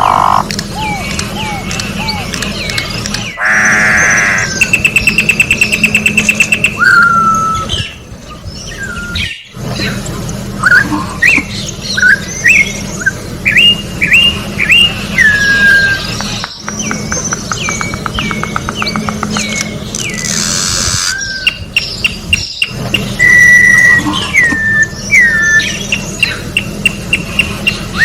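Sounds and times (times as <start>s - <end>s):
other birds calling: 0.0s - 28.0s
fast bird rattle: 16.2s - 19.8s.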